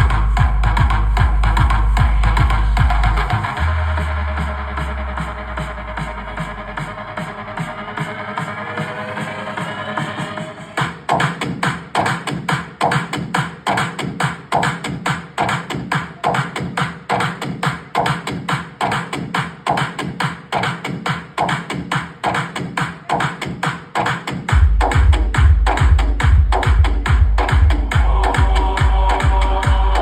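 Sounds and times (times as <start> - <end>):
heavy deep bass: 0.0 - 10.8, 24.5 - 30.0
loud electronic dance music: 0.0 - 30.0.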